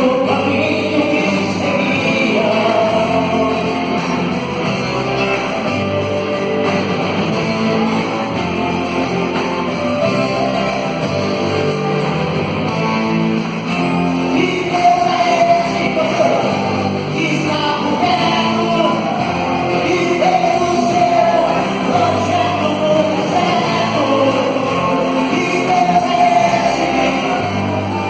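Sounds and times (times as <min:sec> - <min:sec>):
instrumental worship band music: 0:00.0 - 0:28.0.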